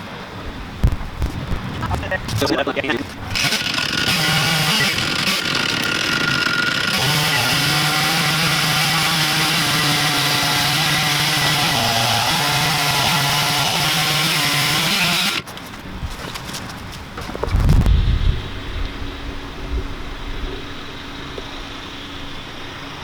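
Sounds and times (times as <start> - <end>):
chainsaw cutting log: 1.8 - 17.9.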